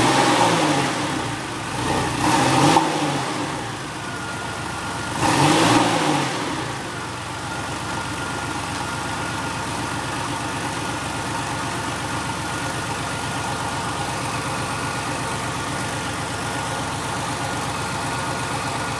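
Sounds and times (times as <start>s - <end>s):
car engine revving and idling: 0.0s - 18.9s.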